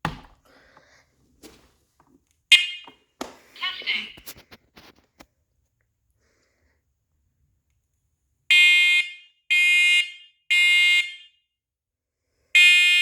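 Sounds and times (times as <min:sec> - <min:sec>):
smoke alarm beeps: 0:02.5 - 0:03.0, 0:08.5 - 0:11.4, 0:12.6 - 0:13.0.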